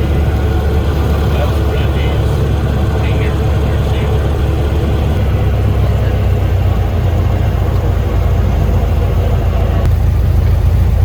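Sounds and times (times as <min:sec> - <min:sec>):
aircraft engine droning: 0:00.0 - 0:11.0.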